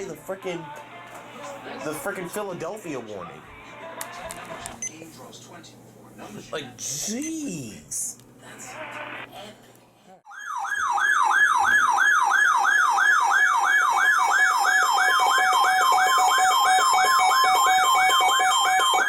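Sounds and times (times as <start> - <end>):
sweeping siren-like alarm tone: 10.3 - 19.0.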